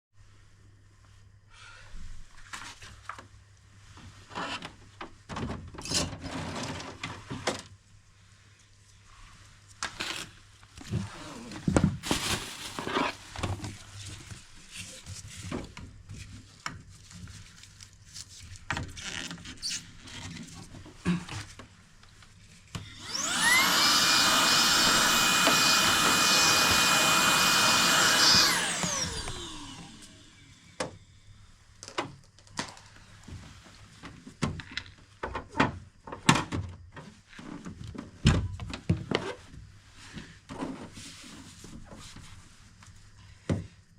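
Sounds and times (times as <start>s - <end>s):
electric blower motor whining: 22.8s - 30.7s.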